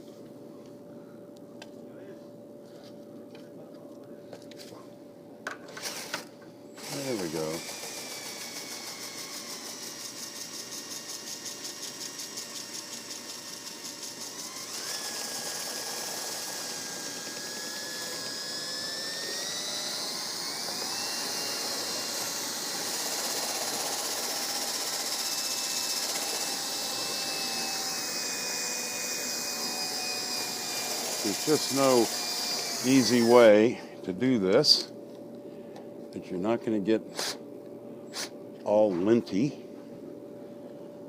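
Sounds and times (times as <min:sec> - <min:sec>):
electric drill spinning brush: 0:05.8 - 0:33.6.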